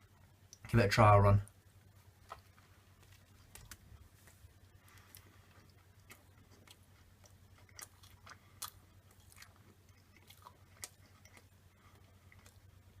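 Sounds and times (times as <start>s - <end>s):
faint chewing: 1.5s - 13.0s.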